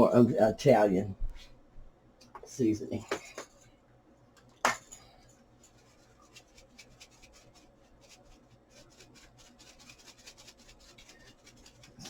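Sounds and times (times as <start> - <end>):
spice jar shaking: 5.7 - 12.0.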